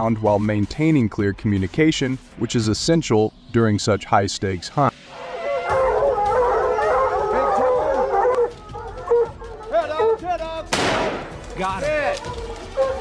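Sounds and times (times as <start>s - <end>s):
hounds baying and howling: 5.1s - 10.6s, 11.4s - 13.0s.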